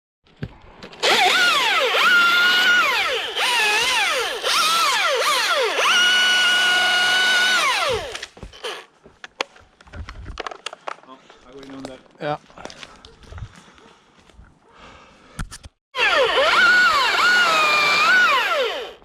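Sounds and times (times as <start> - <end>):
electric chainsaw whine: 1.0 - 8.9, 16.0 - 19.0.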